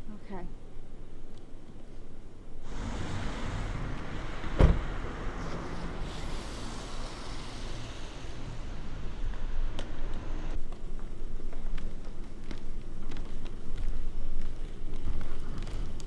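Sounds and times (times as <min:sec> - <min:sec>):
vehicle-like rushing noise: 0:02.6 - 0:10.6
loud thump: 0:02.7 - 0:06.4.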